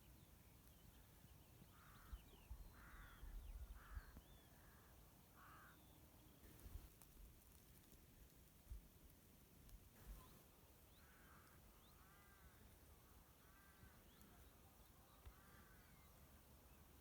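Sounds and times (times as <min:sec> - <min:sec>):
small birds chirping: 0:00.0 - 0:08.8, 0:09.9 - 0:17.0
crow cawing: 0:02.8 - 0:05.8, 0:11.0 - 0:12.7, 0:13.4 - 0:14.0.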